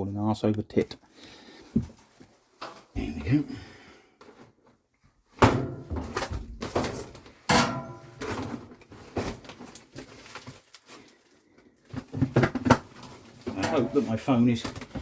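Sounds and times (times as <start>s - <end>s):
scraping and clattering: 12.1s - 15.0s.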